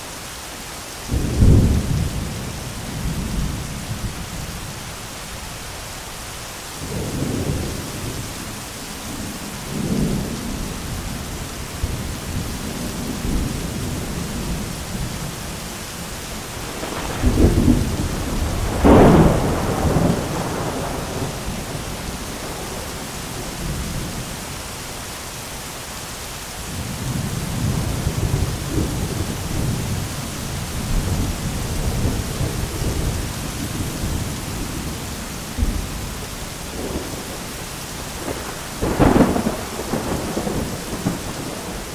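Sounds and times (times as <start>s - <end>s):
heavy rain falling: 0.0s - 41.9s
sharp thunderclap: 1.1s - 2.4s, 16.5s - 24.2s, 35.5s - 37.4s, 38.1s - 41.9s
rolling thunder: 1.1s - 4.5s, 9.1s - 24.4s, 26.7s - 41.9s.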